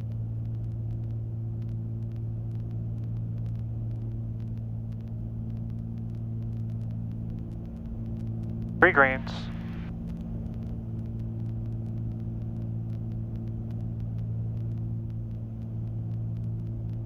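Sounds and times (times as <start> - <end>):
aircraft propeller engines droning: 8.8 - 16.6.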